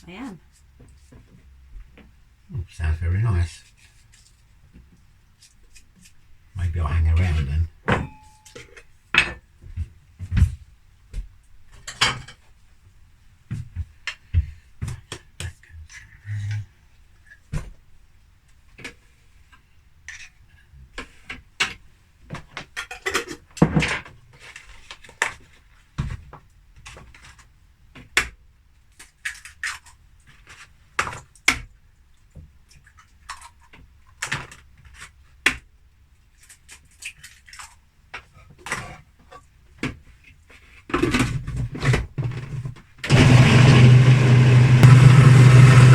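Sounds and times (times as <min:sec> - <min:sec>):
pans and dishes clattering: 0:07.9 - 0:09.4.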